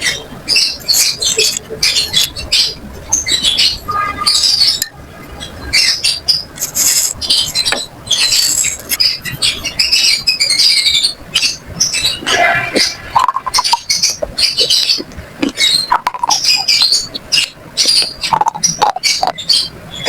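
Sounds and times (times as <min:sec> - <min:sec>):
slate pencils crunching: 0:06.6 - 0:07.7, 0:08.3 - 0:09.0.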